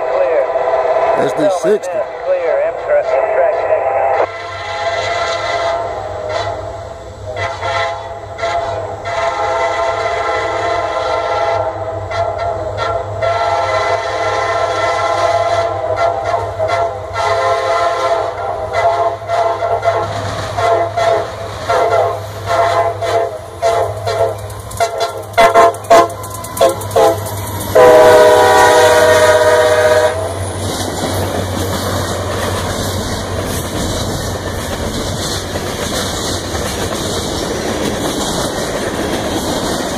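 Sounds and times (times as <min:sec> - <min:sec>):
freight train rumbling and clacking: 0:00.0 - 0:39.9
locomotive air horn blasts: 0:04.2 - 0:30.3.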